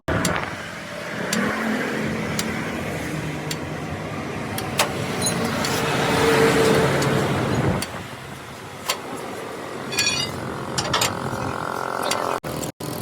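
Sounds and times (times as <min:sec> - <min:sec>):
road noise: 0:00.0 - 0:13.0
vehicle engine running: 0:06.8 - 0:13.0.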